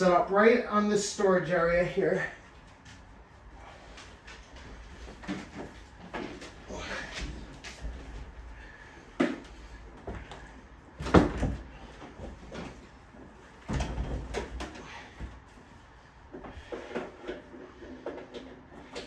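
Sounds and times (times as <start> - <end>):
air conditioner knocks and clunks: 9.0 - 15.7.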